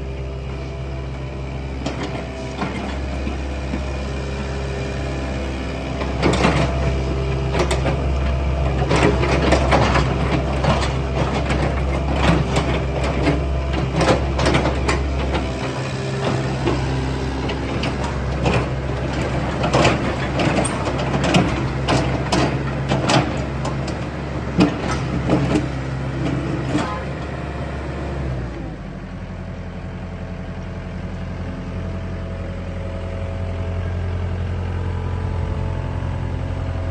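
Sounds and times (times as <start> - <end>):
excavator diesel engine running: 0.0 - 36.9.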